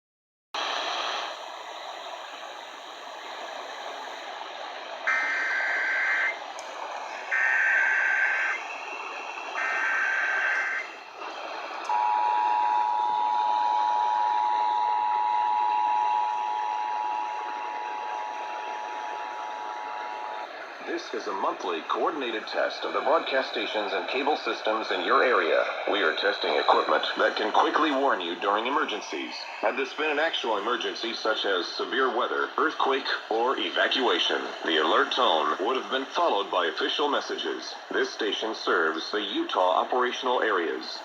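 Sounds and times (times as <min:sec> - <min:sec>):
radio hiss: 0:00.6 - 0:41.0
screeching data bursts: 0:05.1 - 0:06.4, 0:07.3 - 0:11.2.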